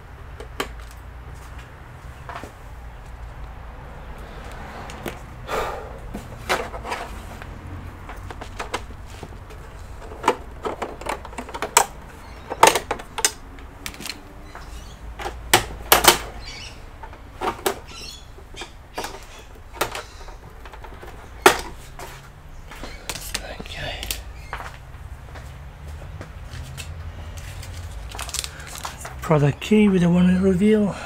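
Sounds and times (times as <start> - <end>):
plastic parts clicking and knocking: 6.4 - 7.2, 8.0 - 16.4, 17.0 - 22.2, 27.6 - 29.2.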